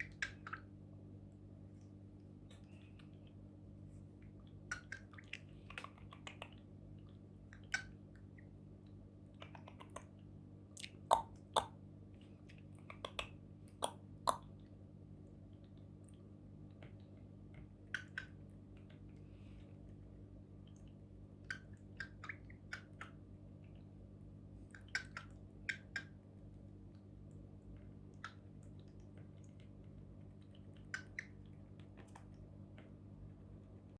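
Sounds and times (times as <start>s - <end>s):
cockatiel clicking mouth sounds: 4.7s - 8.3s, 9.3s - 10.2s, 10.8s - 11.8s, 12.5s - 14.7s.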